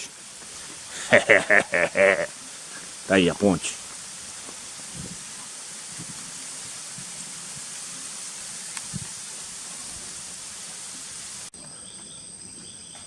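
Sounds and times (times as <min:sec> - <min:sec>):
insects chirping: 0:00.0 - 0:13.0
steady outdoor hiss: 0:00.0 - 0:13.0
soft low thumps: 0:04.5 - 0:05.3.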